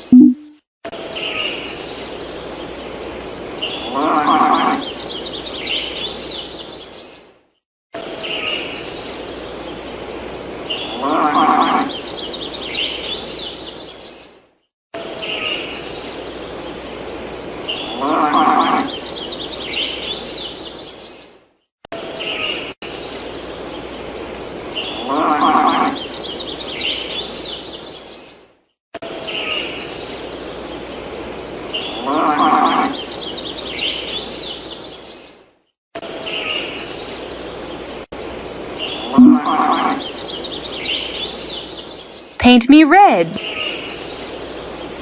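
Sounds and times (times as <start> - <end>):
birds chirping: 38.8 - 44.9.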